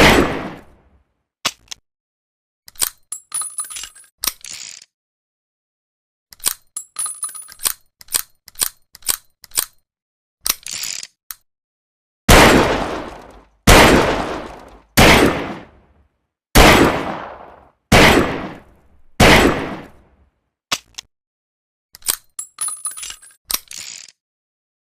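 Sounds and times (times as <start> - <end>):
loud gunshots with echo: 0.0 - 0.7, 12.3 - 15.9, 16.6 - 20.0.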